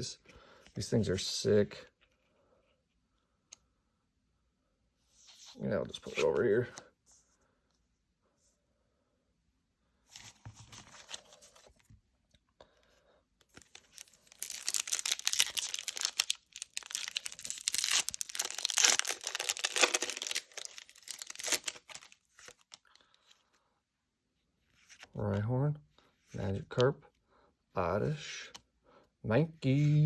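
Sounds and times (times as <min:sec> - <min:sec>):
foil wrapper crinkling and tearing: 0:13.6 - 0:23.0.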